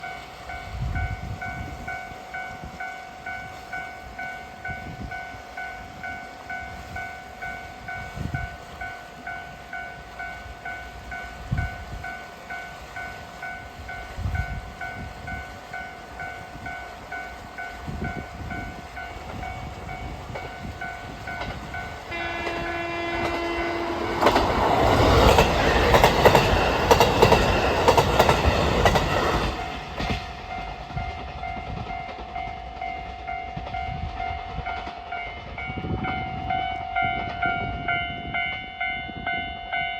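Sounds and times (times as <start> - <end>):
diesel train passing: 0.0 - 39.9
level-crossing warning bell: 0.0 - 39.9
wheels clacking over rail joints: 18.4 - 36.2
train horn: 21.4 - 26.5.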